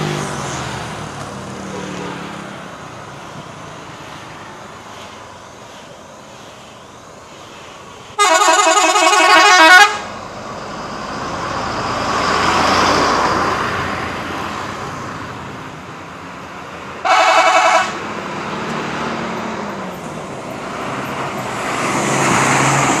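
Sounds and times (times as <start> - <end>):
passing vehicle noise: 0.0 - 23.0
melodic multi-tone bus horn: 8.2 - 10.2, 17.0 - 18.0.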